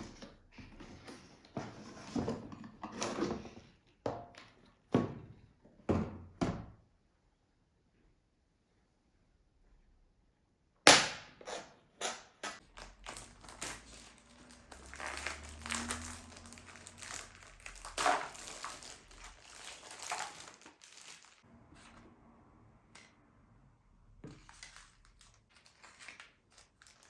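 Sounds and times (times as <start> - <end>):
crinkly material being handled: 12.6 - 21.5, 24.3 - 27.0.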